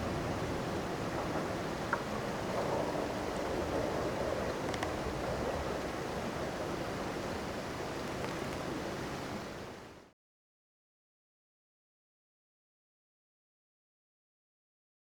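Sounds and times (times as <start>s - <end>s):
steady rushing noise: 0.0s - 10.1s.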